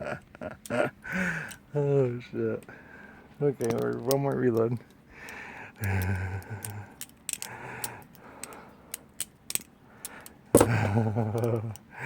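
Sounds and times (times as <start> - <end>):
butterfly knife metal clicks: 3.6 - 10.4.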